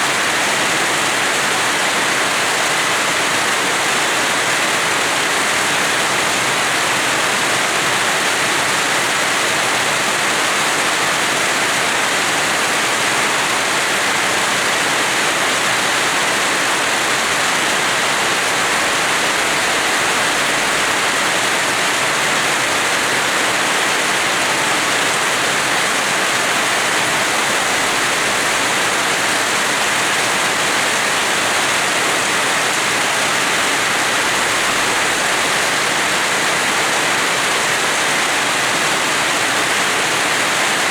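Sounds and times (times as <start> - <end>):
rain falling: 0.0 - 40.9.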